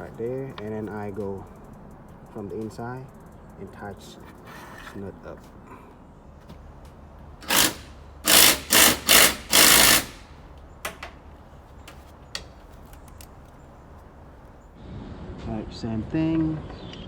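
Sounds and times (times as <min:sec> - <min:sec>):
power driver tightening nut: 0:07.4 - 0:11.2.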